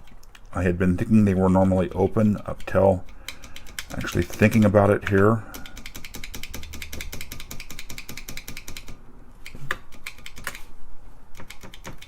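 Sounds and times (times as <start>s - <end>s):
keyboard keys clicking: 1.7s - 10.7s, 11.4s - 12.0s.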